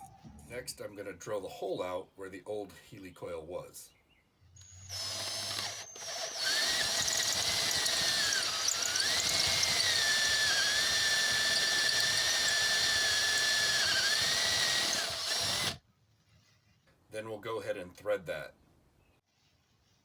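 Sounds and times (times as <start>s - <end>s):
electric drill whining: 4.6s - 15.8s.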